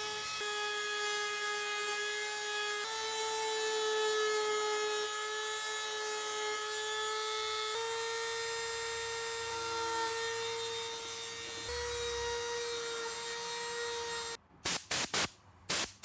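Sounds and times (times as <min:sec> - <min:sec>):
rotary tool grinding whine: 0:02.8 - 0:14.4.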